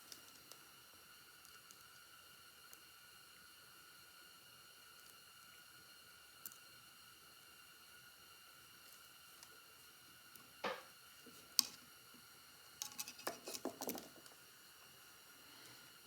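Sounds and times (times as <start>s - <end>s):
screwdriver clicking on metal: 12.8s - 14.0s
screwdriver scraping metal: 12.8s - 14.1s.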